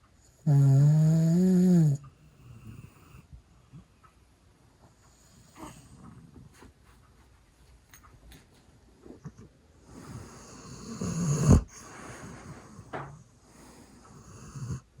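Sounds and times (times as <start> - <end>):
snoring: 0.3 - 3.3, 9.9 - 15.0.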